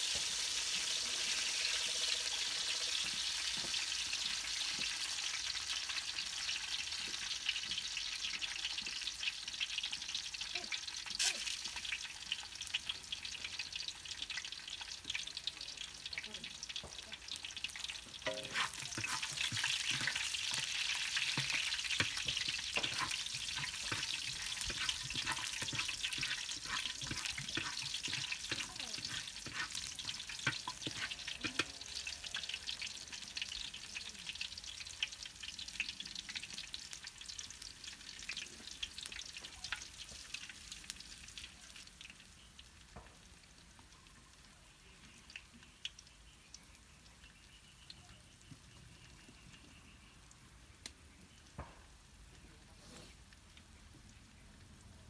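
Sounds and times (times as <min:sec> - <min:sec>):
food sizzling in oil: 0:00.0 - 0:50.8
utensil stirring in pan: 0:16.8 - 0:34.1.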